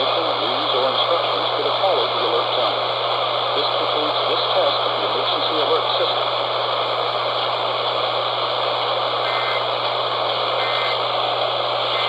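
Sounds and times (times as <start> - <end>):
radio static hiss: 0.0 - 12.0
faint warbling data squawks: 9.2 - 9.6, 10.6 - 11.0.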